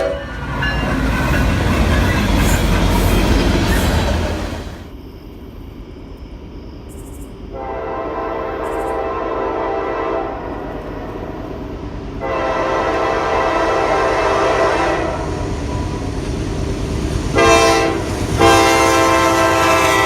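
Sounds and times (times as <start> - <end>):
train rumbling: 0.0 - 20.0
locomotive air horn chord: 7.6 - 10.5, 12.2 - 15.3, 17.4 - 20.0.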